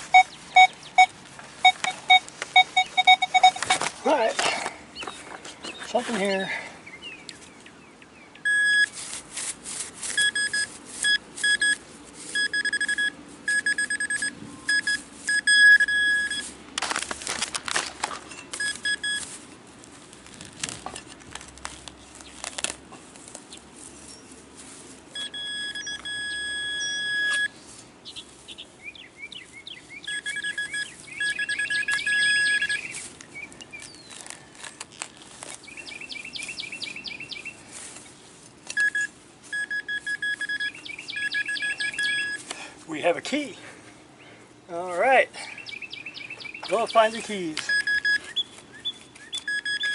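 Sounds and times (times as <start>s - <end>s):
metal detector pulsing chirps: 0.0s - 3.9s, 8.4s - 8.9s, 10.1s - 16.5s, 18.3s - 19.3s, 25.2s - 27.5s, 30.0s - 33.0s, 38.7s - 42.4s, 46.6s - 49.9s
metal detector tone: 0.0s - 3.9s, 8.4s - 9.0s, 10.1s - 16.5s, 18.3s - 19.3s, 25.2s - 27.6s, 30.1s - 33.0s, 38.7s - 42.4s, 47.6s - 48.4s, 49.4s - 49.9s
digging scrapes: 8.7s - 13.4s.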